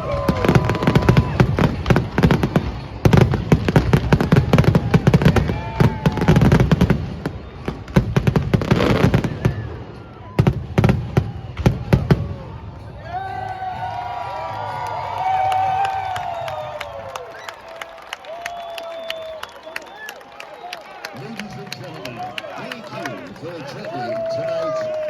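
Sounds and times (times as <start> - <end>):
fireworks bangs and crackles: 0.0 - 13.0.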